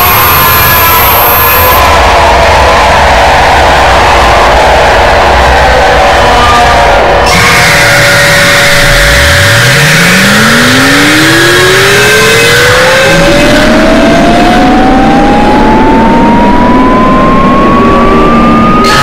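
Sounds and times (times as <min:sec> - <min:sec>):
rising electronic tone: 0:00.0 - 0:02.0, 0:07.3 - 0:19.0
dense noisy mix: 0:00.0 - 0:19.0
steady low tone: 0:13.1 - 0:18.9.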